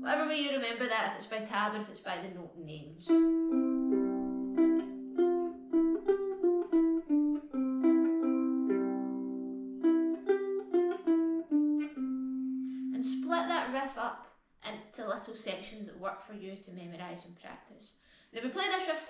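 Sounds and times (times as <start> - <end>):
ukulele plucked melody: 3.1 - 13.7.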